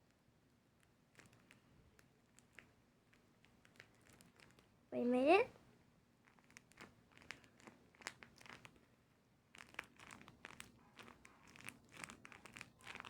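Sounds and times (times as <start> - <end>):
plastic wrapping crinkling: 1.1 - 4.7, 6.2 - 13.0.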